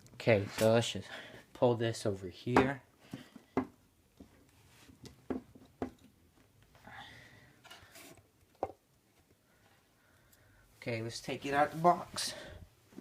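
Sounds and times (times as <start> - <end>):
soft rustle: 4.3 - 5.0.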